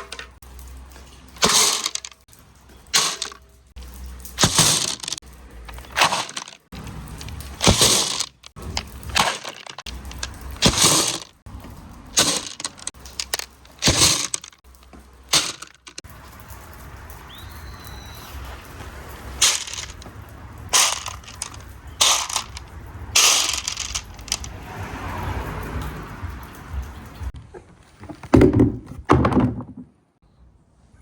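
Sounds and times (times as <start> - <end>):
marbles clattering through wooden run: 0.0 - 17.1, 19.3 - 26.8.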